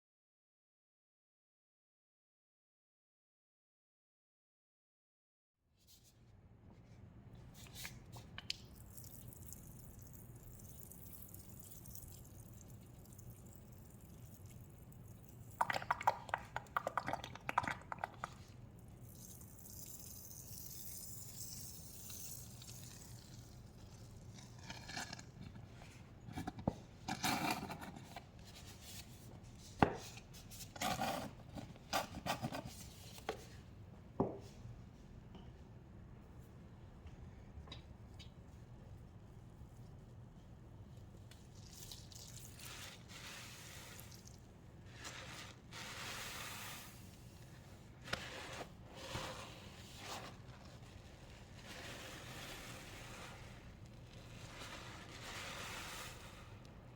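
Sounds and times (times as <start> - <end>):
liquid sloshing and dripping: 8.1 - 25.5, 41.1 - 44.6.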